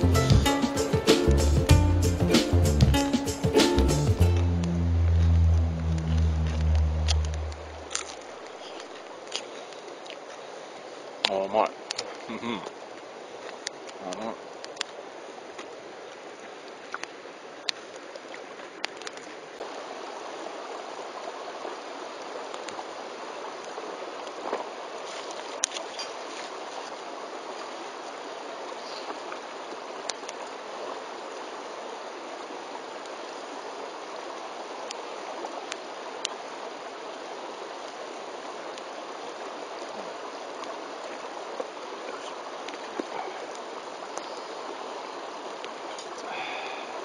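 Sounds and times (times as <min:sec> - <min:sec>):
steady rushing noise: 0:04.1 - 0:07.9.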